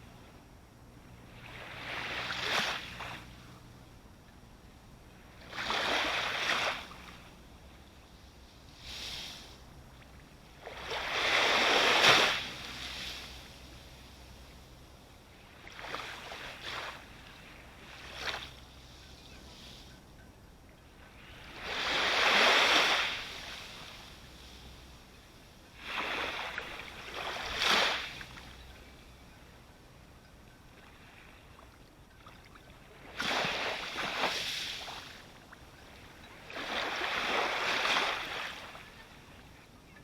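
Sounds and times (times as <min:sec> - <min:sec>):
ocean waves breaking on shore: 0:01.1 - 0:03.7, 0:05.0 - 0:20.2, 0:20.8 - 0:29.7, 0:30.7 - 0:39.8.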